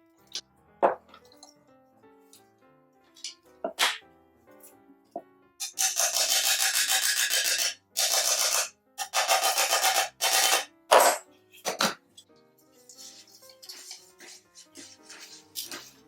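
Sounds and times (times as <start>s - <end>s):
hand file rasping on metal: 12.9s - 16.0s.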